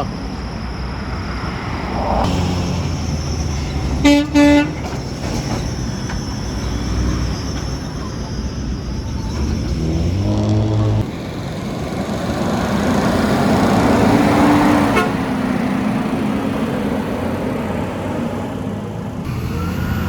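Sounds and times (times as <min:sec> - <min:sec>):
heavy truck engine running: 0:00.0 - 0:20.0
truck horn honking: 0:03.9 - 0:05.0, 0:14.9 - 0:15.3.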